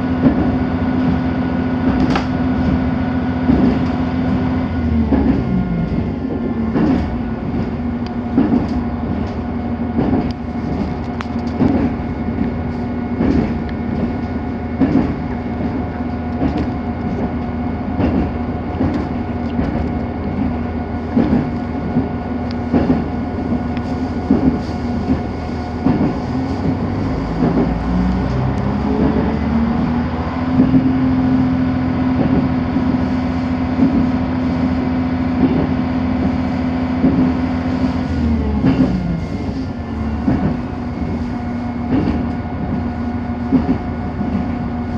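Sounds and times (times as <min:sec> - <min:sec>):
train running rumble and hum: 0:00.0 - 0:44.9
train wheels clattering over rail joints: 0:00.0 - 0:44.9.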